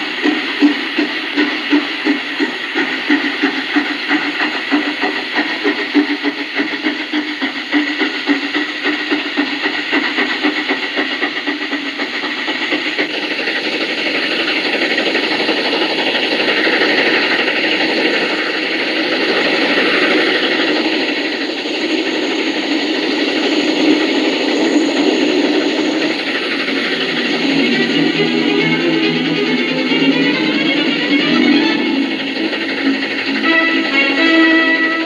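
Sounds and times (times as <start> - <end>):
model train motor hum: 0.0 - 35.0
rushing noise: 23.9 - 35.0.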